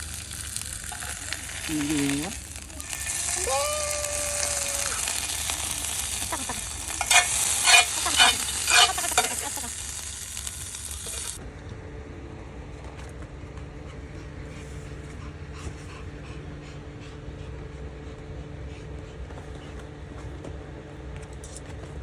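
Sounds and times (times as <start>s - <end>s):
food sizzling in a frying pan: 0.0s - 11.4s
utensil scraping a pan: 6.8s - 9.6s.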